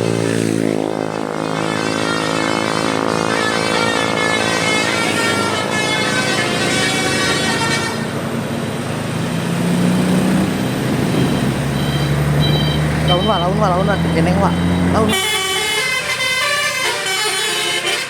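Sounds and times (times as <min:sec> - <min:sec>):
engine running: 0:00.0 - 0:18.0
musical bus air horns: 0:01.0 - 0:08.4, 0:11.2 - 0:18.0.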